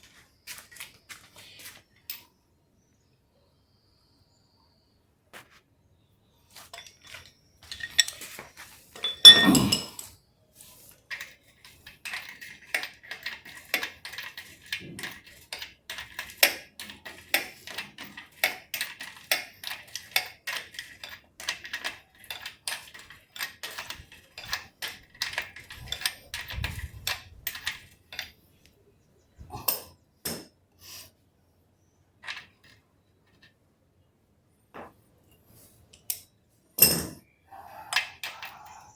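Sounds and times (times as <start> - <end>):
metal tools clinking and tapping: 6.6 - 10.2, 11.1 - 28.4, 37.9 - 38.9.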